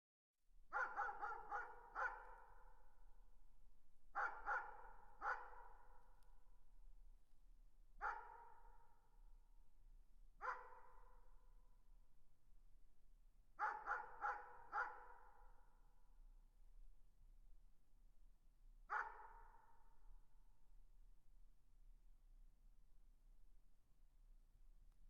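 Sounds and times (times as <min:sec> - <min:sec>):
distant dog barking: 0:00.7 - 0:02.6, 0:04.2 - 0:05.9, 0:08.0 - 0:08.7, 0:10.4 - 0:11.2, 0:13.6 - 0:15.3, 0:18.9 - 0:19.7.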